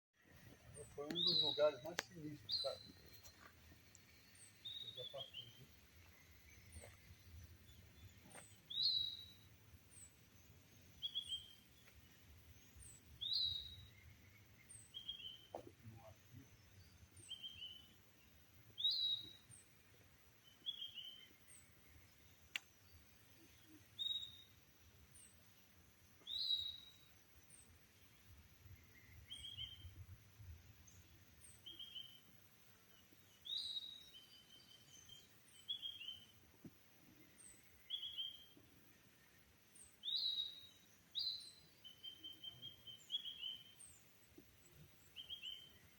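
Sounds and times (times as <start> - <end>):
birds calling: 0.3 - 9.4
high bird chirp: 0.8 - 3.4.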